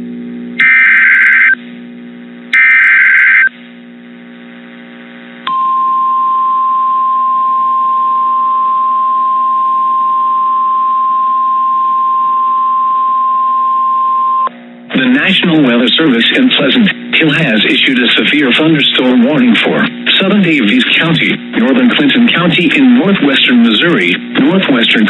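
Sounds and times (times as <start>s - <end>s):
buzzy data bursts: 0.6s - 1.6s, 2.5s - 3.6s.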